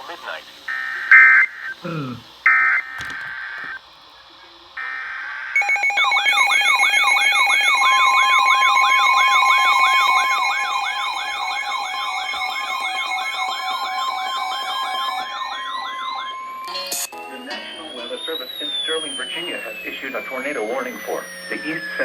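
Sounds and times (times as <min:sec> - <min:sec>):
electronic alert siren: 0:00.7 - 0:01.8, 0:02.5 - 0:03.8, 0:04.8 - 0:22.0
steady alert tones: 0:05.6 - 0:22.0.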